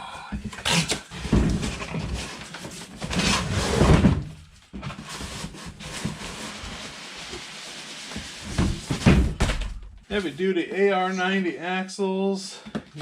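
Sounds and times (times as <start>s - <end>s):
packaging rustling and scraping: 4.8s - 9.0s.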